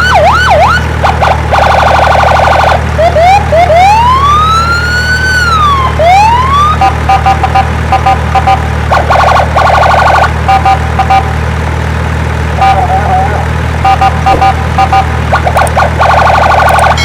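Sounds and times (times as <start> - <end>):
electronic toy siren: 0.0 - 6.9, 8.9 - 10.3, 14.4 - 17.0.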